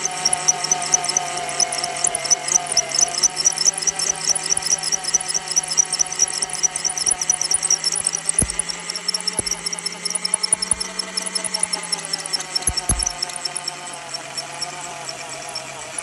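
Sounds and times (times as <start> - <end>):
magnetic drill boring steel: 0.0 - 13.8
low thumps: 8.4 - 8.8, 9.4 - 9.6.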